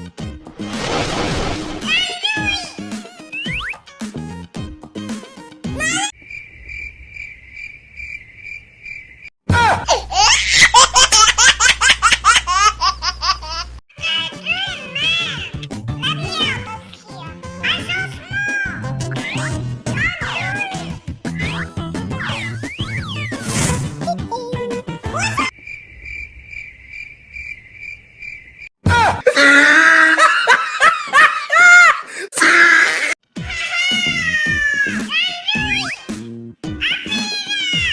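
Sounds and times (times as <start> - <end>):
cricket chirping: 6.2 - 9.3, 25.5 - 28.7
high-pitched laughter: 9.5 - 14.9, 29.0 - 36.0, 36.8 - 37.9
high-pitched giggling laugh: 36.8 - 37.9.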